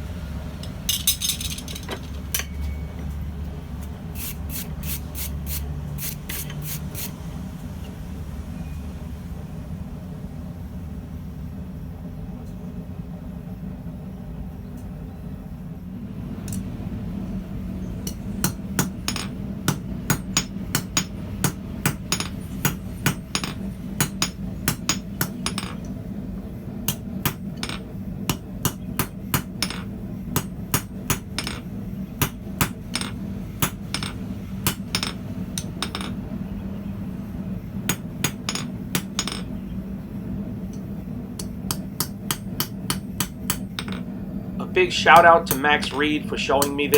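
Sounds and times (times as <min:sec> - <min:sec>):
steady low hum: 0:00.0 - 0:46.9
hammer striking steel on anvil: 0:18.0 - 0:25.9, 0:26.9 - 0:36.2, 0:37.9 - 0:39.5, 0:41.4 - 0:44.1, 0:44.8 - 0:46.9.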